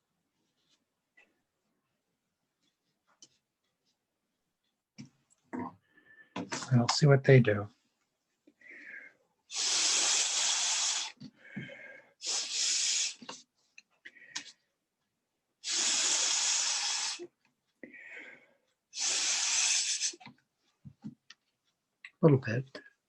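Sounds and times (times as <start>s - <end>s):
person blowing hard: 9.5s - 11.2s, 12.2s - 13.4s, 15.6s - 17.3s, 19.0s - 20.2s.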